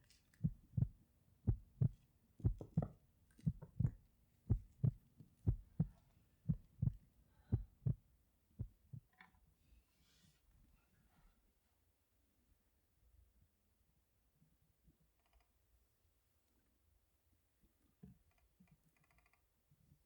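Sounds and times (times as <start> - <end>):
heartbeat double thumps: 0.4 - 8.0, 8.6 - 9.0.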